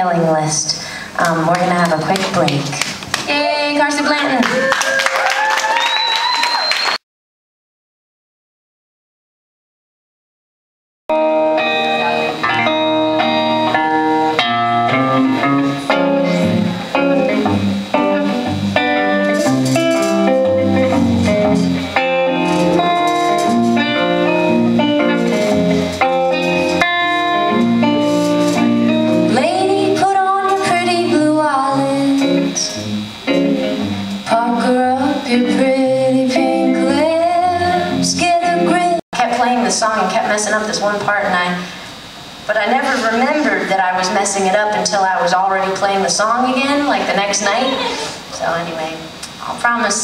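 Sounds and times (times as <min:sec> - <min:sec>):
guitar strumming: 0:11.1 - 0:39.0
woman singing: 0:29.3 - 0:32.8, 0:34.3 - 0:39.5.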